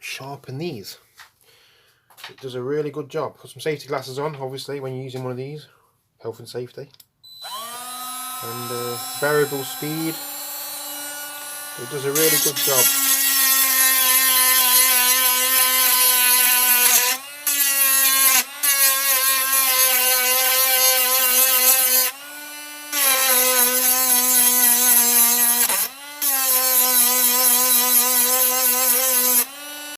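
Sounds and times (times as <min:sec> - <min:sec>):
multi-tool whining: 0:07.2 - 0:29.9.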